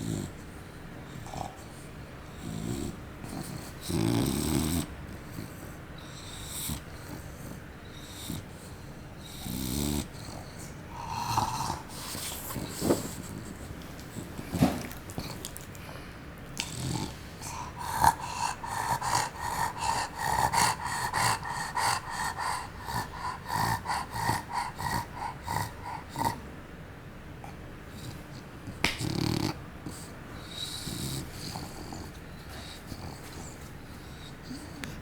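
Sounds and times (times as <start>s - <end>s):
dog breathing noisily: 0.0s - 26.4s, 29.0s - 35.0s.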